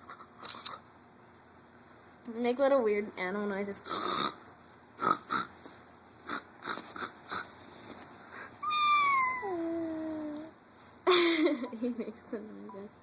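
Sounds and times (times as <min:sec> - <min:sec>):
person squealing: 0:08.6 - 0:10.5.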